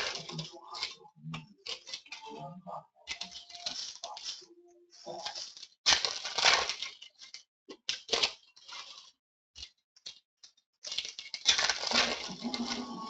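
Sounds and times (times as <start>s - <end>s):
foil wrappers crinkling: 0.0s - 2.3s, 3.1s - 13.0s
cards being handled: 3.1s - 13.0s.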